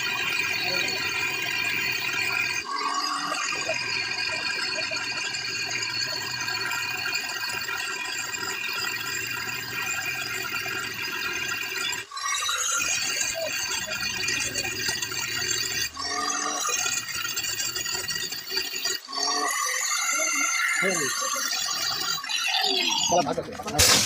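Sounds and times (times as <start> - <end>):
mechanical rattling: 20.8 - 24.0.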